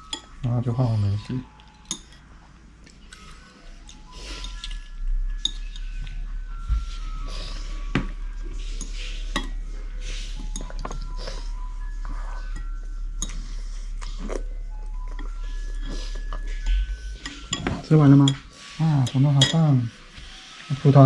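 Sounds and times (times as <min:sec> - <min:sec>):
faint light melody notes: 0:00.0 - 0:21.0
steady low hum: 0:00.0 - 0:21.0
spoon clinking against bowl: 0:01.4 - 0:02.2, 0:08.8 - 0:09.6, 0:16.3 - 0:19.6.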